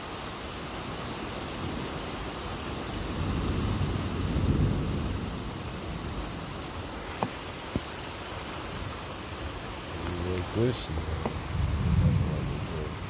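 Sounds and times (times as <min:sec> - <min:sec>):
heavy rain falling: 0:00.0 - 0:13.0
thunder rumbling: 0:02.9 - 0:07.1, 0:08.7 - 0:13.0.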